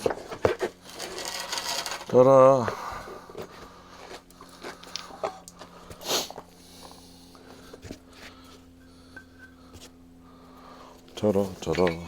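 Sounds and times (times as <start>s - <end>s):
steady low hum: 0.0s - 12.0s
tools clicking and knocking: 11.6s - 12.0s.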